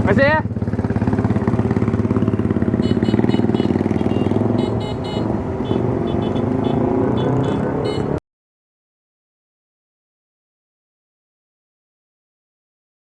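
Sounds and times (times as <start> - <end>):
motorcycle engine running: 0.0 - 8.2.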